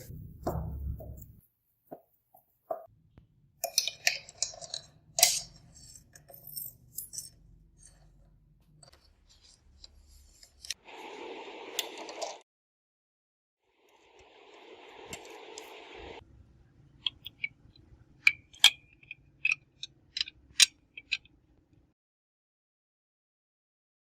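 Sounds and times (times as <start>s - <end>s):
steady hiss: 10.6s - 12.4s, 13.9s - 16.2s.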